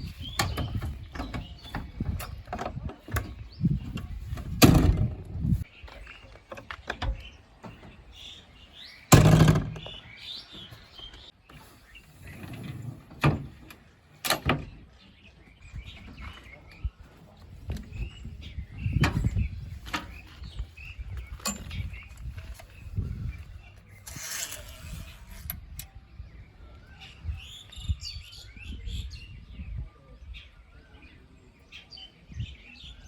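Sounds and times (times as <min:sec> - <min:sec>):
birds chirping: 0:00.0 - 0:33.0
loud thumps: 0:04.0 - 0:05.6, 0:09.1 - 0:10.0.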